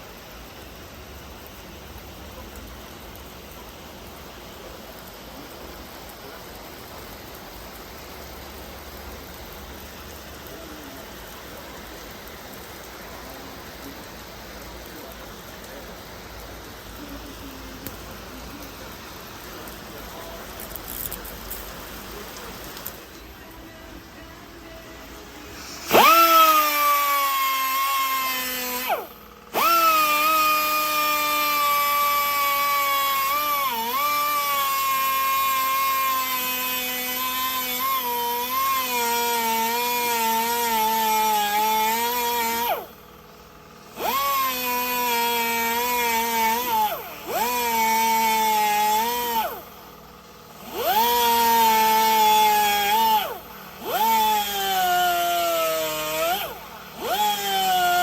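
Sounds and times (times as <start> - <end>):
starter motor whining: 14.5 - 58.0.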